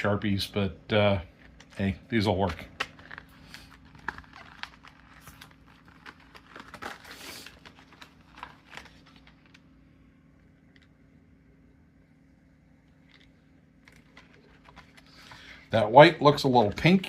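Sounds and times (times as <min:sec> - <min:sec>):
plastic crinkling: 0:01.3 - 0:09.8, 0:12.9 - 0:17.0.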